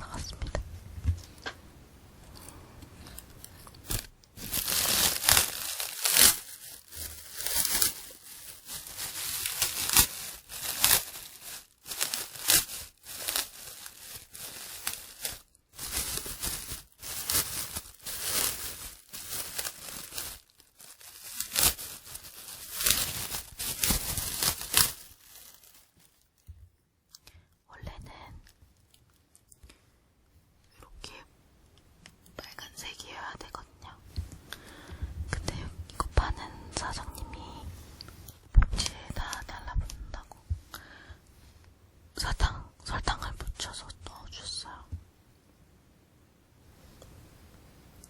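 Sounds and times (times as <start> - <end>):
plastic wrapping crinkling and tearing: 3.1 - 26.5.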